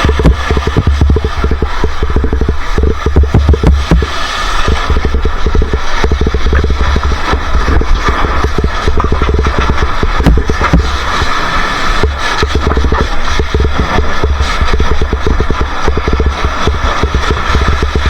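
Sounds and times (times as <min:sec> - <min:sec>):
motorcycle engine running: 0:00.0 - 0:11.2.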